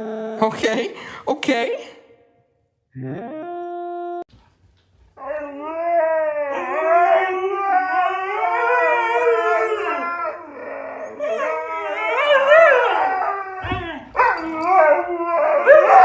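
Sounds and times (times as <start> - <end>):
dog howling: 5.2 - 16.0.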